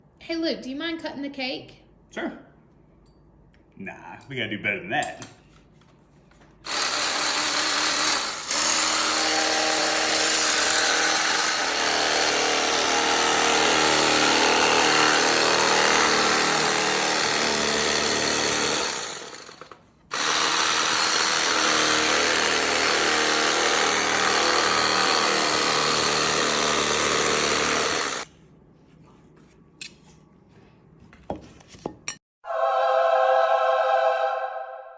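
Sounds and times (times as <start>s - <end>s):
electric cutter motor buzzing: 6.6s - 28.3s.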